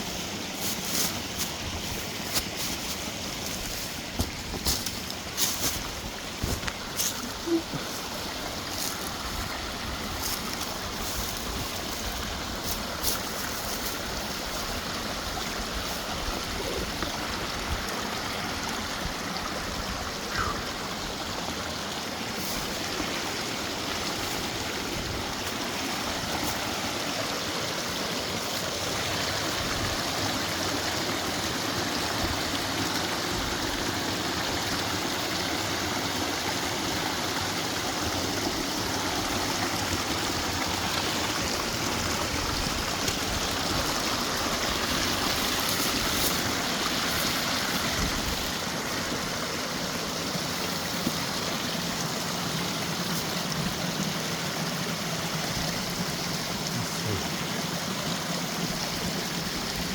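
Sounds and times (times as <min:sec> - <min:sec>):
creek running over rocks: 0:00.0 - 0:59.9.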